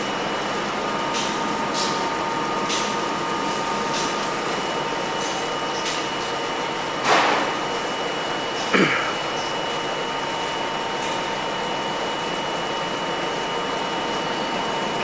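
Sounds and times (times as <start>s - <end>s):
subway car hum and rush: 0.0s - 15.0s.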